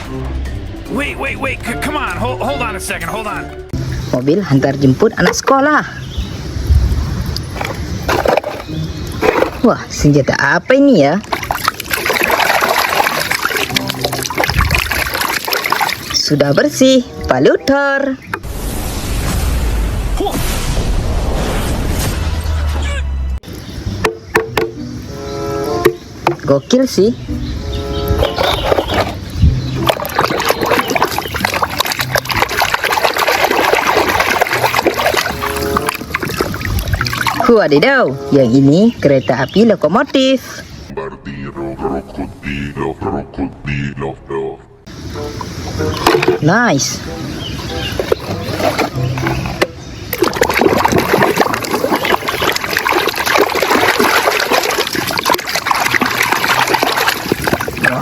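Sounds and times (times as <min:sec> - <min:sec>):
water splashing and trickling: 0:03.8 - 0:20.4, 0:23.4 - 0:39.8, 0:44.9 - 0:58.0.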